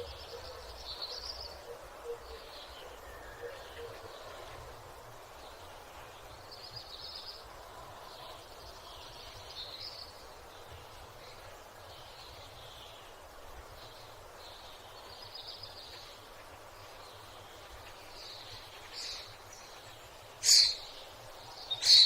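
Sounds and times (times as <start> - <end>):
small birds chirping: 8.2 - 22.0.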